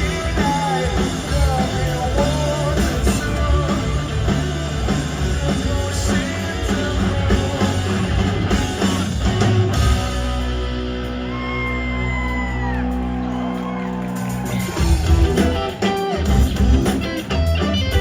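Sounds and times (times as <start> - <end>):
person singing: 0.0 - 9.0
live rock band playing: 0.0 - 18.0.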